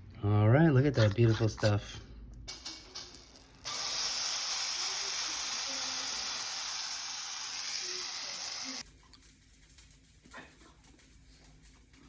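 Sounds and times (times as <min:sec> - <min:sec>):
batter sizzling in pan: 0:03.6 - 0:08.8.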